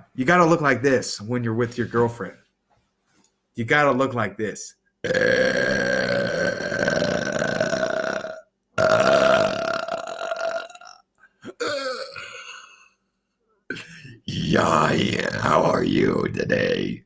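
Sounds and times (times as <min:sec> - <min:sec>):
long belches: 0:05.0 - 0:12.9, 0:13.7 - 0:16.2.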